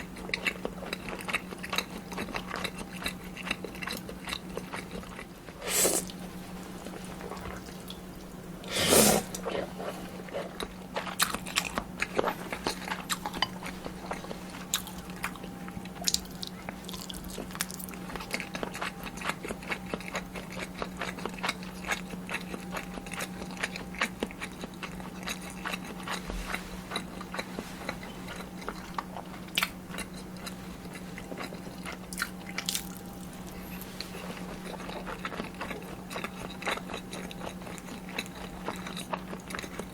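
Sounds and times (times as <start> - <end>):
wet chewing: 0.0 - 6.2, 6.8 - 39.9
noodle slurping: 8.6 - 10.0.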